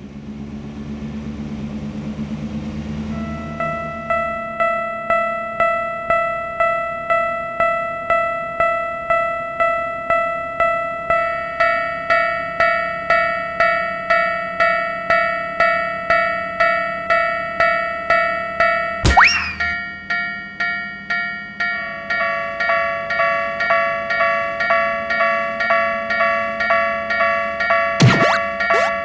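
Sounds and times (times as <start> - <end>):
railroad crossing bell ringing: 3.1 - 18.3, 20.1 - 29.0
rising whistle sound effect: 19.0 - 19.8, 28.0 - 29.0.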